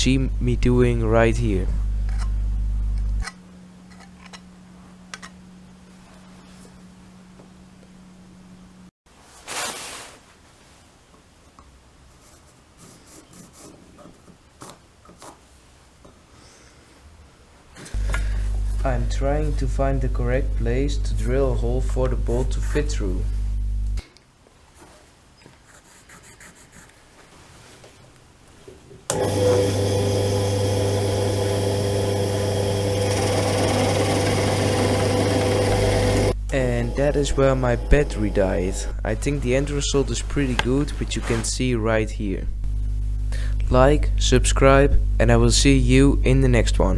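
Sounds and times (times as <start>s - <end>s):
drill press motor humming: 18.0s - 24.0s, 29.1s - 41.2s.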